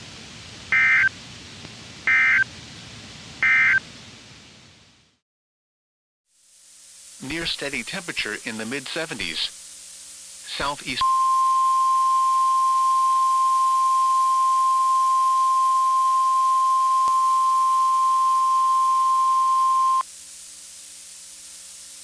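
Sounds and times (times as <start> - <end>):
faint radio hiss: 0.0 - 5.2, 6.3 - 22.0
high alarm tone: 11.0 - 20.0.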